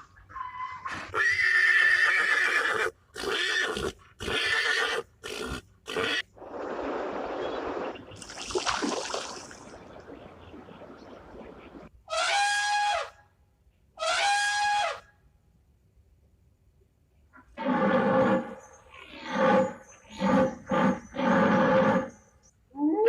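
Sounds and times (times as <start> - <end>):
horse whinnying: 0.3 - 6.2.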